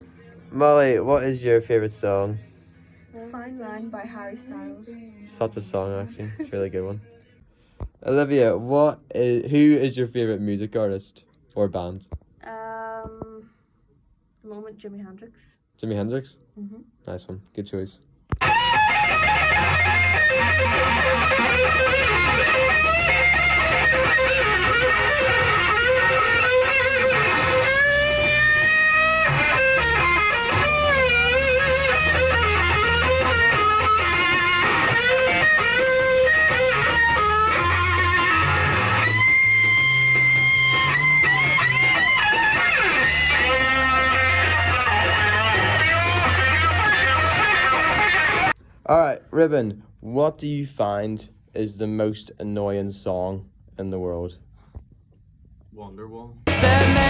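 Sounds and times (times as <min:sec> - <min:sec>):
bass line: 0:18.4 - 0:48.5, 0:56.5 - 0:57.0
electric guitar lead: 0:18.4 - 0:48.6, 0:56.5 - 0:57.0.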